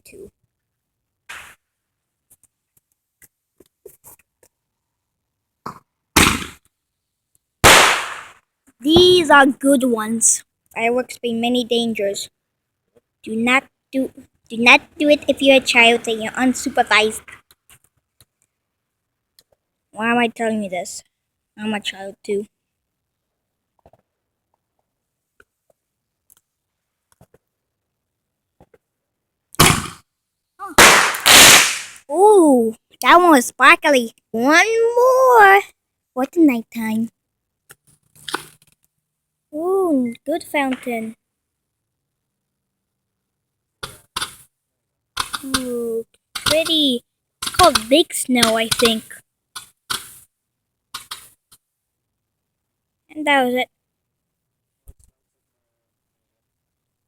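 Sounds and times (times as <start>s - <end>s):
bursts of noise: 1.3s - 1.6s, 7.6s - 9.2s, 30.6s - 32.1s
faint ticks and crackles: 2.2s - 4.8s, 23.7s - 28.0s, 35.6s - 39.0s, 43.8s - 51.7s
firework pop: 7.6s - 8.4s
fireworks bangs: 7.6s - 9.3s, 30.8s - 32.0s.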